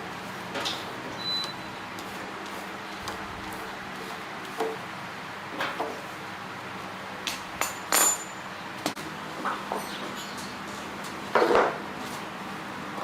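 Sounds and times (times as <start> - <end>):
metal tools clinking: 7.6 - 8.5.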